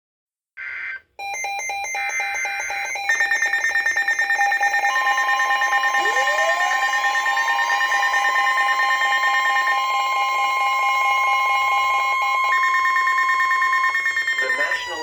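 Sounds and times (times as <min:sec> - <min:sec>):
rapid electronic beeping: 0:01.2 - 0:15.0
steady high tones: 0:01.3 - 0:15.0
rising siren-like tone: 0:04.6 - 0:15.0
data noise burst: 0:12.5 - 0:15.0.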